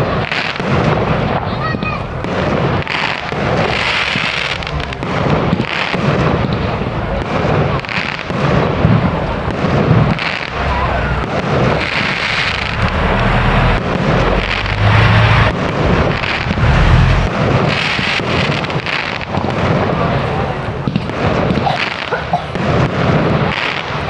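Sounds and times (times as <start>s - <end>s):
fireworks crackling: 0.0s - 24.0s
firework shells bursting: 7.6s - 19.7s
rumbling boom: 8.6s - 18.9s.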